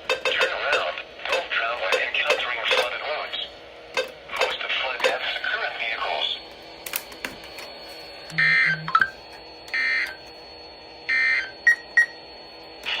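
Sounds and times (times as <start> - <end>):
buzzy two-tone data warble: 8.3 - 9.2
loud blips: 8.3 - 9.2.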